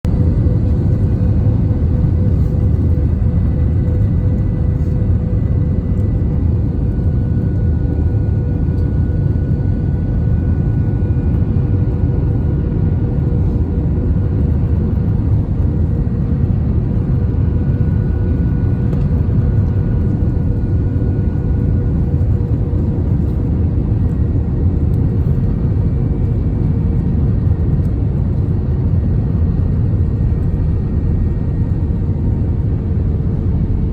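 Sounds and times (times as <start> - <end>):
airliner engine rumble: 0.0 - 33.9.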